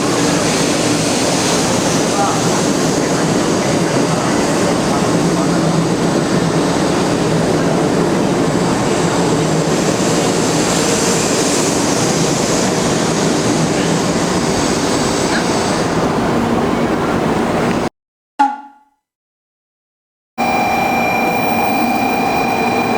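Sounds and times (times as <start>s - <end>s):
train rushing and rumbling: 0.0s - 17.9s, 20.4s - 22.9s.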